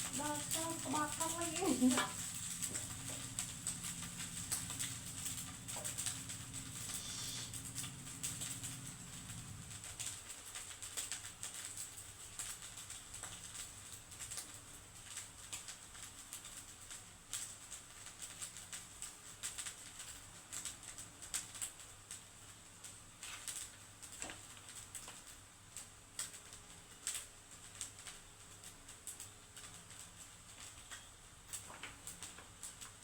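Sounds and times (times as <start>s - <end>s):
faint steady hum: 0.0s - 10.2s.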